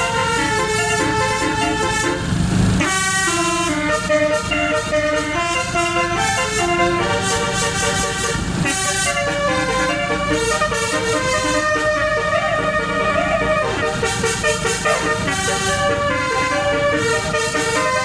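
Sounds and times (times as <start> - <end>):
bus horn playing a melody: 0.0 - 18.0.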